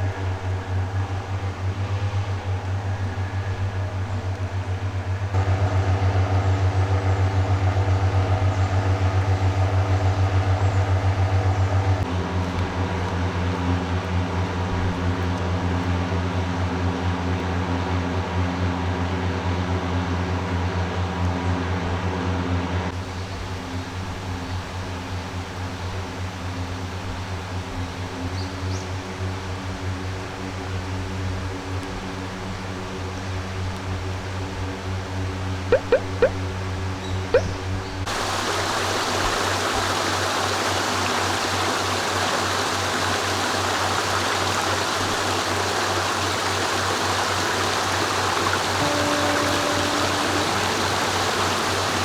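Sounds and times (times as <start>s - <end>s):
motorcycle engine running: 0.0s - 15.2s.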